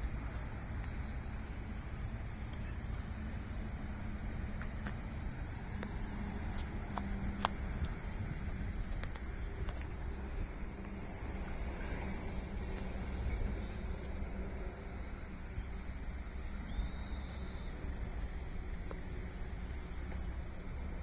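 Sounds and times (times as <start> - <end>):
insect chorus: 0.0 - 21.0
faint ticks: 4.5 - 14.6, 17.8 - 20.4.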